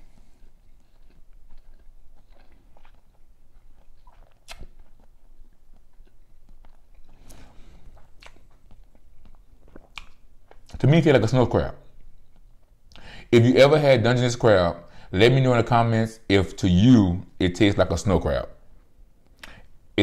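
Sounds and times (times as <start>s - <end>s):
person chewing and biting: 0.0s - 10.8s, 11.8s - 13.0s
sharp clicks and snaps: 4.4s - 4.9s.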